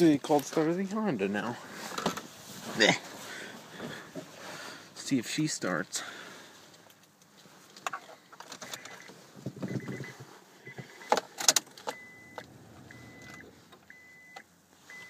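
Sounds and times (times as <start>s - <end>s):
car warning chime beeping: 8.7s - 9.1s, 9.7s - 11.2s, 11.9s - 15.0s.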